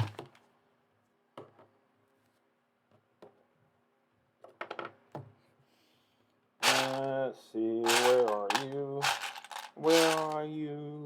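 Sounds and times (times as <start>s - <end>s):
plastic toy bricks clicking: 6.6s - 7.0s, 7.9s - 10.4s.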